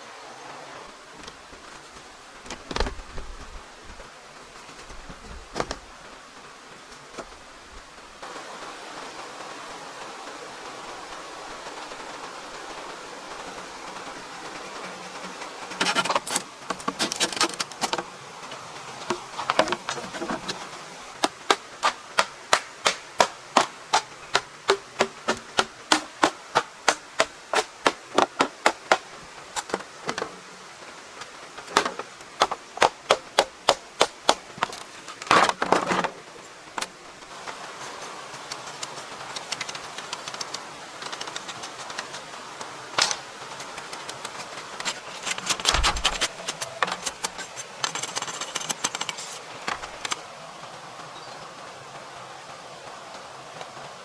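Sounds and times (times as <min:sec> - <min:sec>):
hand tool striking wood: 0:21.2 - 0:29.0.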